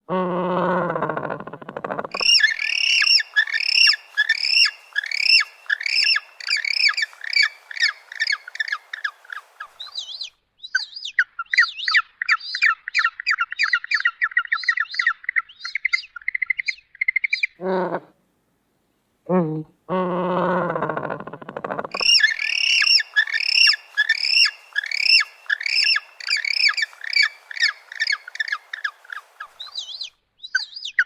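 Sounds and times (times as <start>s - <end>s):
penguin chicks peeping: 1.8s - 9.3s, 21.7s - 29.9s.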